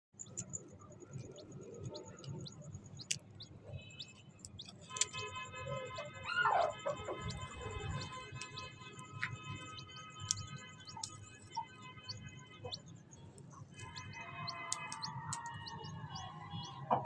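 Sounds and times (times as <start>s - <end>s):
background music sustained tones: 0.2s - 17.0s
chicks peeping: 5.8s - 12.9s, 13.5s - 17.0s.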